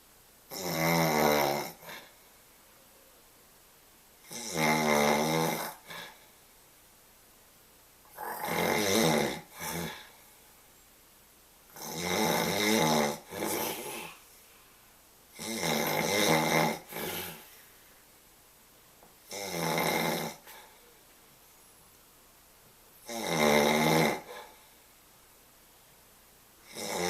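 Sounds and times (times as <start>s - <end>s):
man snoring: 0.5s - 2.1s, 4.2s - 6.2s, 8.1s - 10.2s, 11.7s - 14.2s, 15.4s - 17.5s, 19.3s - 20.6s, 23.0s - 24.6s, 26.6s - 27.0s
quiet breath: 13.4s - 15.0s, 16.9s - 18.1s, 20.4s - 21.8s.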